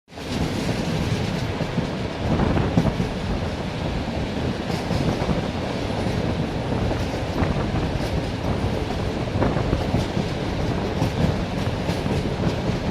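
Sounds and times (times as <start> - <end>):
train wheels rumbling on rails: 0.1 - 12.9
wheels clicking over rail joints: 6.0 - 12.9.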